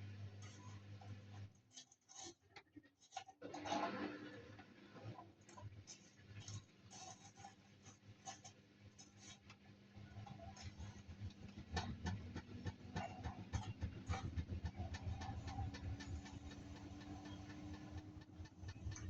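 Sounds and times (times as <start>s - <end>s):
washing machine motor hum: 0.0s - 19.0s
washing machine drum turning: 11.4s - 19.0s.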